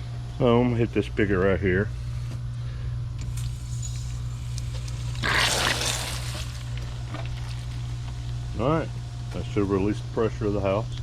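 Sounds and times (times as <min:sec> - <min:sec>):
water gushing and sputtering: 0:03.2 - 0:08.0.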